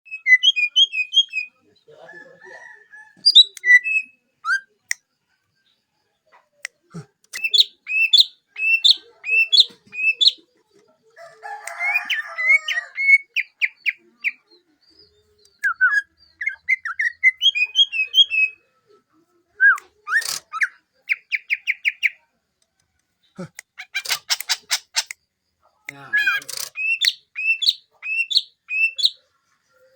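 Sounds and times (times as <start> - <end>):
bird chirping and whistling: 7.4 - 10.4, 26.1 - 29.2.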